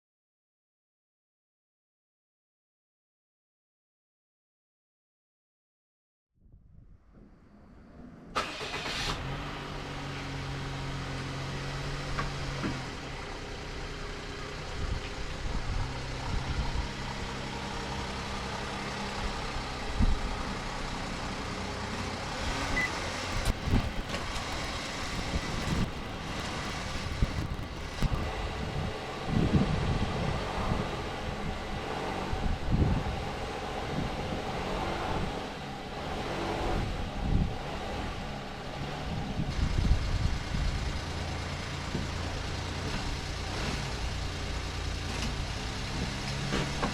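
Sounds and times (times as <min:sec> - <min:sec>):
car engine idling: 0:10.0 - 0:28.8, 0:39.6 - 0:46.0.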